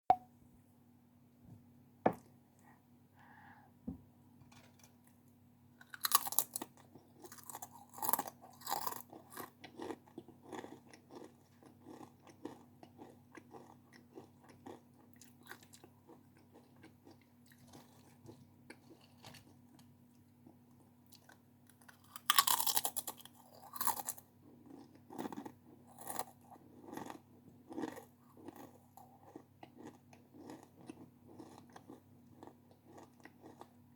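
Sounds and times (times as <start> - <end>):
crunchy snack bites: 5.8 - 18.1, 21.1 - 33.7
crunchy chewing: 5.8 - 33.8.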